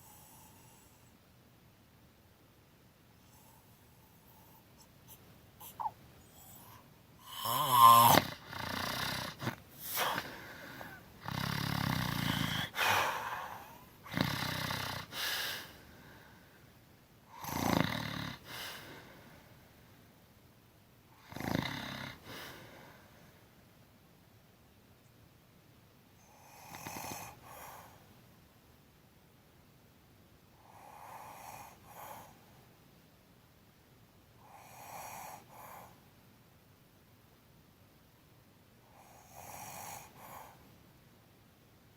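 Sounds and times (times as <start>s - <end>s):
woman snoring loudly: 7.2s - 10.3s, 11.2s - 13.4s, 14.1s - 15.2s, 17.4s - 18.5s, 21.2s - 22.3s.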